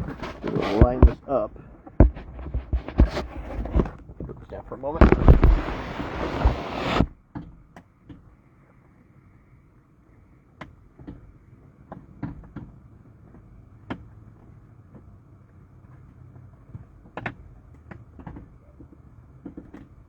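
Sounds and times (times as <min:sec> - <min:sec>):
camera being handled: 0:02.0 - 0:04.1, 0:05.0 - 0:07.0.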